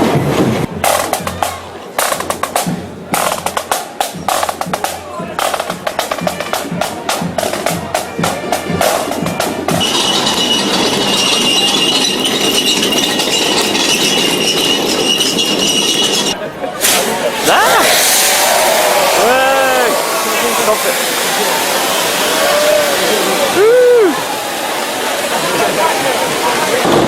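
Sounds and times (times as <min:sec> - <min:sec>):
snare drum rolls: 0:00.0 - 0:14.5
noisy din with high ringing tone: 0:09.8 - 0:16.4.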